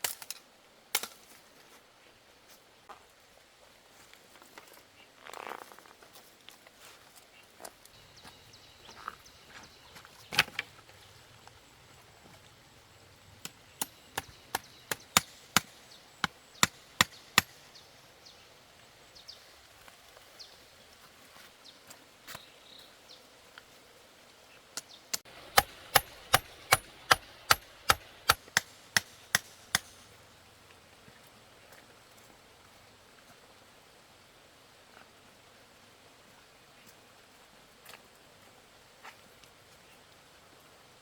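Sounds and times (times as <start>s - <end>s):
blade chopping: 13.8s - 17.6s, 25.2s - 30.1s.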